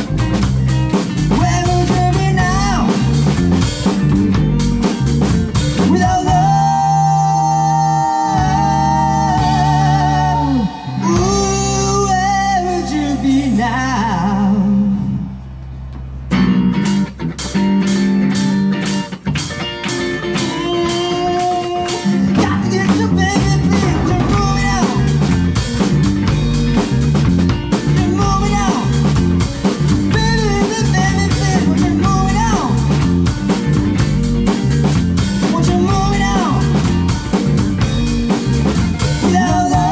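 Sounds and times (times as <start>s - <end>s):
drum kit: 0.0s - 13.8s, 16.0s - 39.9s
guitar: 0.0s - 39.9s
person singing: 1.3s - 3.1s, 5.7s - 15.2s, 20.3s - 25.2s, 27.9s - 29.1s, 30.1s - 33.0s, 35.4s - 37.2s, 39.0s - 39.9s.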